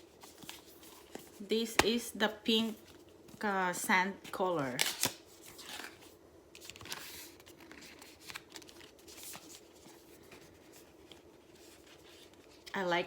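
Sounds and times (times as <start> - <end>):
low room hum: 0.0 - 13.0
packaging rustling and clicking: 4.7 - 12.7.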